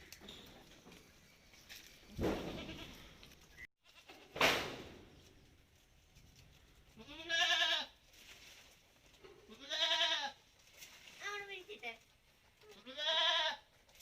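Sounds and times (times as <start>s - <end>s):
goat bleating: 2.4s - 3.1s, 7.0s - 8.0s, 9.4s - 10.4s, 12.6s - 13.7s.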